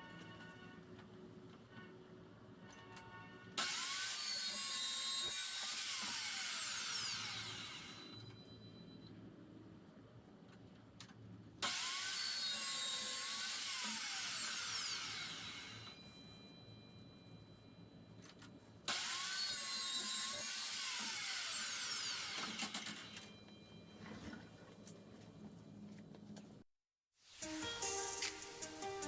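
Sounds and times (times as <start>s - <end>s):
chop saw cutting steel: 3.6s - 8.2s, 11.6s - 15.9s, 18.9s - 23.3s.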